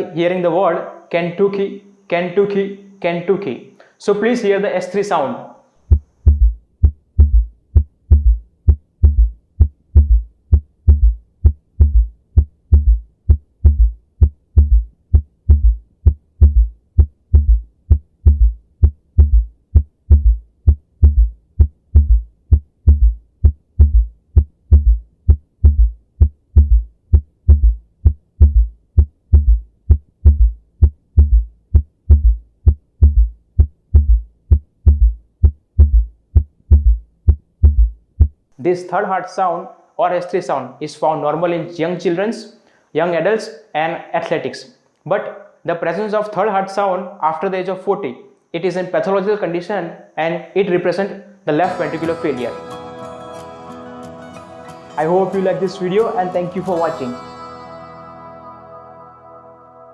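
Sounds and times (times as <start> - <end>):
heartbeat thumps: 5.8 - 38.5.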